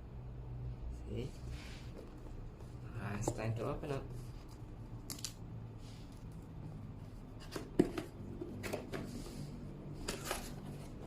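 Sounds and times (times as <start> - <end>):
box scraping and rustling: 7.3 - 11.0.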